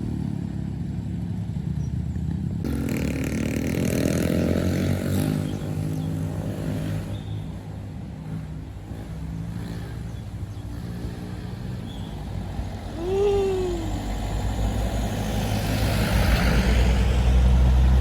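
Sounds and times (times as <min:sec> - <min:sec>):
truck diesel engine labouring: 0:12.4 - 0:18.0.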